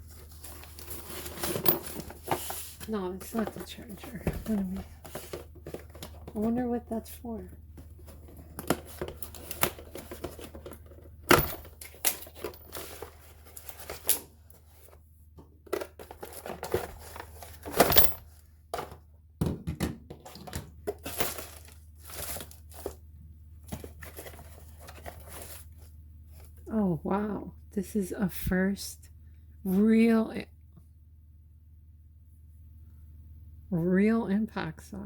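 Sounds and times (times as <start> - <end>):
cardboard and plastic rustling: 0.0 - 19.0, 20.1 - 26.7.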